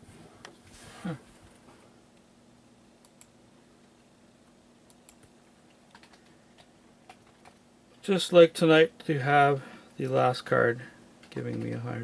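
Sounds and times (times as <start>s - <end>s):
faint computer keyboard typing: 3.0s - 3.4s, 4.8s - 7.7s, 11.2s - 12.0s.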